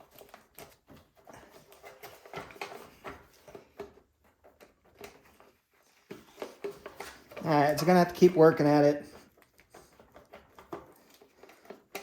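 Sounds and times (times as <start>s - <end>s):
screwdriver clicking and scraping plastic: 0.0s - 8.2s, 9.1s - 12.0s.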